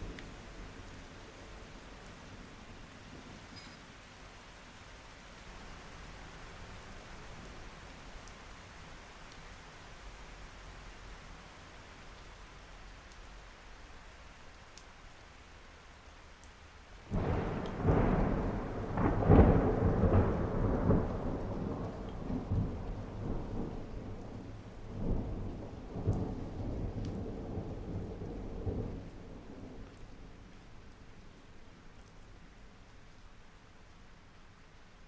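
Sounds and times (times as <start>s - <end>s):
steady rain: 0.0s - 35.0s
thunder rumbling: 17.1s - 30.4s.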